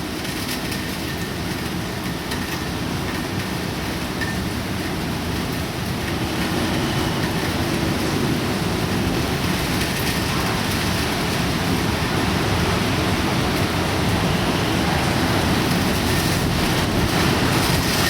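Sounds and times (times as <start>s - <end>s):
heavy wind and rain: 0.0s - 18.0s.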